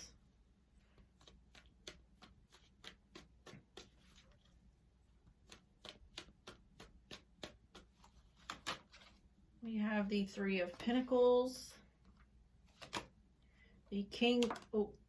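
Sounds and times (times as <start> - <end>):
cards being shuffled by hand: 0.8 - 9.3, 12.0 - 13.2.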